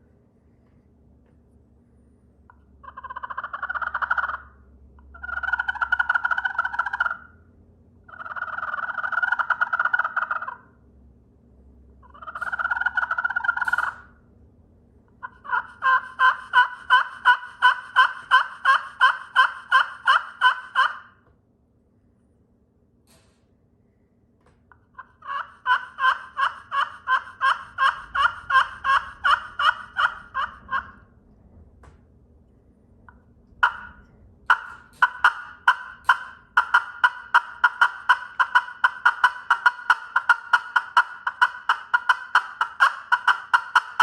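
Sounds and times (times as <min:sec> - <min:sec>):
slate turkey call: 0:02.8 - 0:07.4, 0:08.1 - 0:10.8, 0:12.0 - 0:14.1, 0:15.2 - 0:21.2, 0:24.7 - 0:31.1, 0:33.6 - 0:44.0.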